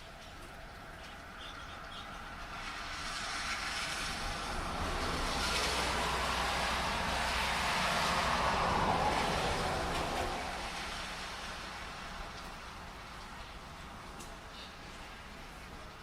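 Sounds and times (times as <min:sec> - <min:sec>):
rain hissing: 0:00.0 - 0:16.0
car tyres hissing on wet road: 0:01.1 - 0:16.0.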